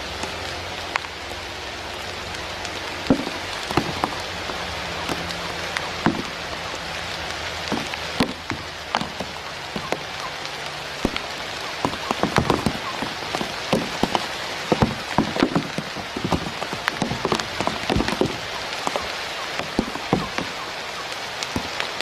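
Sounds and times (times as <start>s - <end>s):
heavier raindrops tapping: 0.0s - 22.0s
rain pattering: 0.0s - 22.0s.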